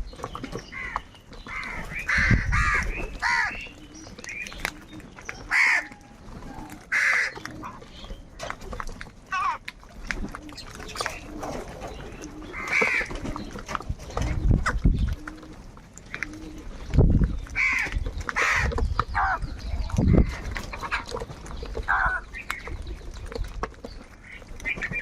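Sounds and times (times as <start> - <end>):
crows cawing: 0.8 - 3.6, 5.5 - 6.0, 6.9 - 7.4, 9.3 - 9.6, 12.6 - 13.1, 17.6 - 19.4, 21.9 - 22.2.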